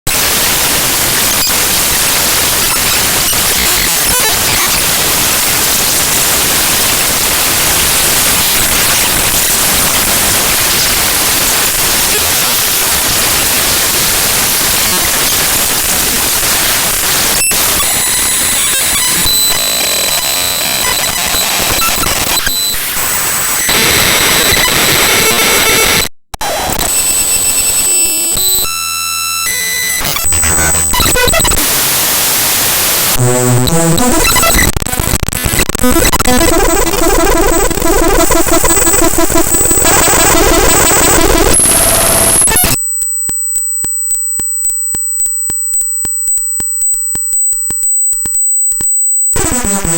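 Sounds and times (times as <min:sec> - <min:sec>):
harsh static-like hiss: 0:00.2 - 0:26.9, 0:29.6 - 0:42.8
choppy repeating digital pattern: 0:33.2 - 0:41.9.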